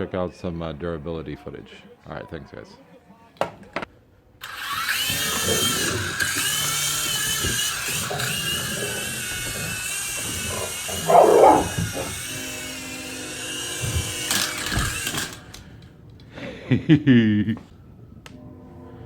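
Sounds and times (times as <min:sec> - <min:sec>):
toy helicopter rotor motors whining: 0:04.4 - 0:15.6
dog barking: 0:10.9 - 0:12.1.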